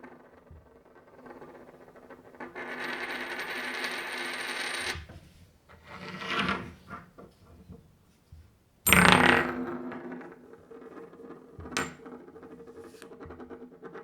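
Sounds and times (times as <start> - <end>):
coin spinning on hard surface: 0.0 - 5.1, 5.8 - 7.0.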